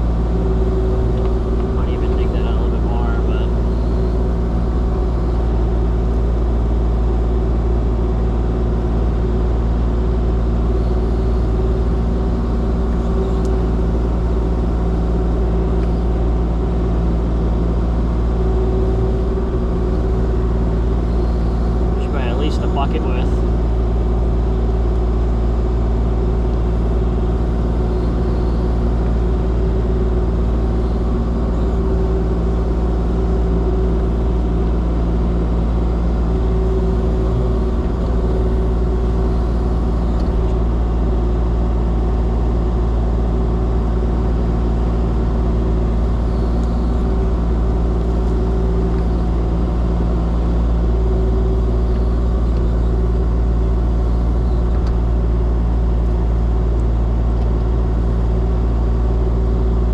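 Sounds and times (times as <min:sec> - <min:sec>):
excavator diesel engine running: 0:00.0 - 0:59.9.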